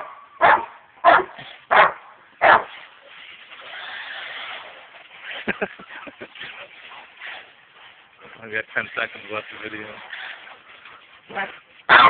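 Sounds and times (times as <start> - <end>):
dog barking: 0.0 - 2.7
steady hiss: 2.9 - 11.3.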